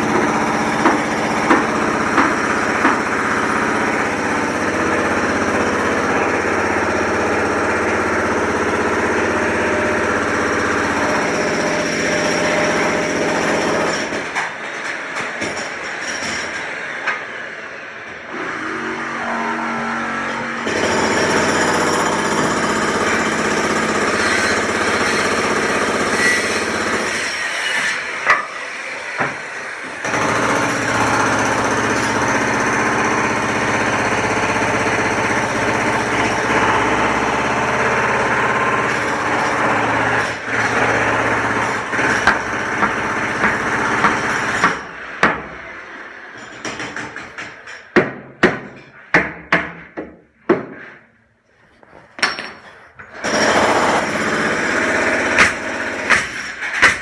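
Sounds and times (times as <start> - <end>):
power tool rattling loudly: 53.1 - 56.8.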